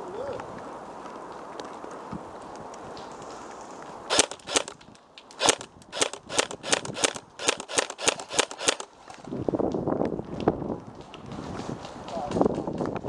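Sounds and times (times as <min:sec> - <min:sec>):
airsoft gun shots: 0:04.1 - 0:04.8, 0:05.4 - 0:08.9.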